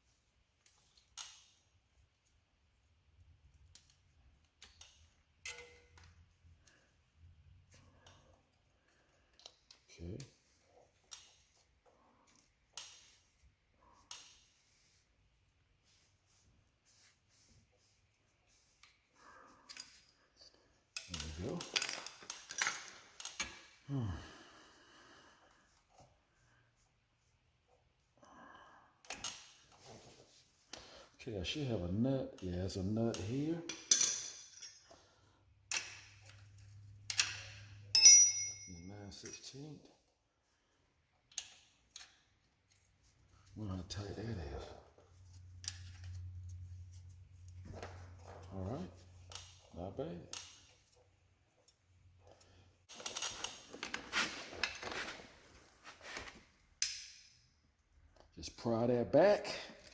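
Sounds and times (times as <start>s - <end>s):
metallic clicks of hand tools: 56.8s - 57.4s.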